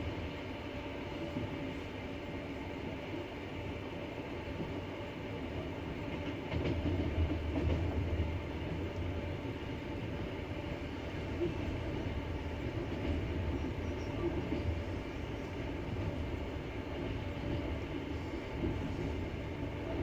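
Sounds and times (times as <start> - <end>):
train wheels rumbling on rails: 0.0 - 20.0.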